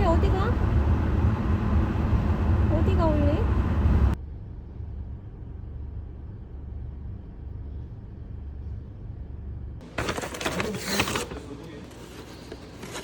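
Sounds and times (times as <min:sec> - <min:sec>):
car engine rumble from cabin: 0:00.0 - 0:09.8
loud rustling and scraping: 0:09.8 - 0:13.0.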